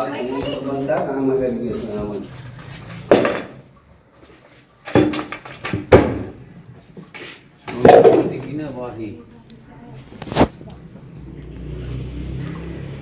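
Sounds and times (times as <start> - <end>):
hard objects knocking and clinking: 2.9 - 3.6, 4.8 - 6.3, 7.7 - 8.6.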